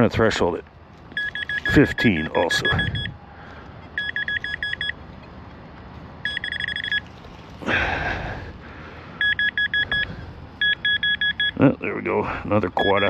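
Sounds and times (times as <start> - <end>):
metal detector beeps: 1.1 - 3.2, 4.0 - 5.0, 6.2 - 7.1, 9.2 - 11.6, 12.8 - 13.0.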